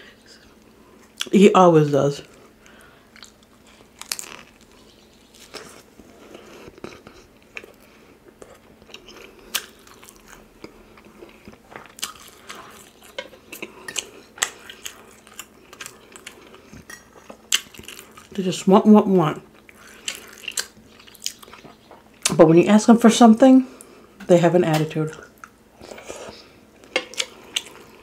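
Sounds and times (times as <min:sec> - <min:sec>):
person chewing with mouth sounds: 0:02.3 - 0:18.4, 0:19.5 - 0:22.4, 0:25.1 - 0:28.0.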